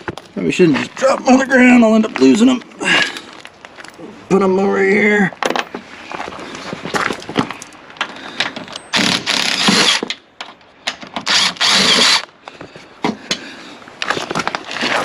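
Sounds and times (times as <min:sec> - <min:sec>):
clicks and knocks of parts: 0:07.0 - 0:11.4
impact wrench running: 0:09.0 - 0:10.1, 0:11.3 - 0:12.3.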